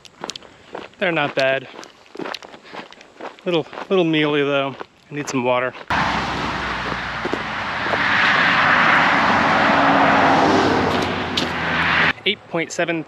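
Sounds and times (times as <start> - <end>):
vehicle passing by: 5.9 - 12.2.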